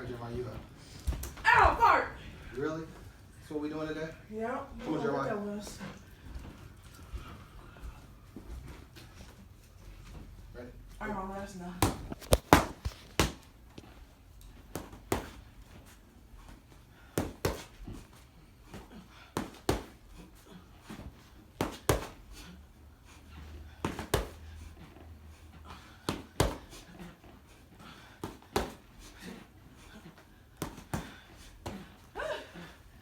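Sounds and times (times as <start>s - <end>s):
sharp workout thuds: 26.0s - 26.8s, 28.2s - 28.9s.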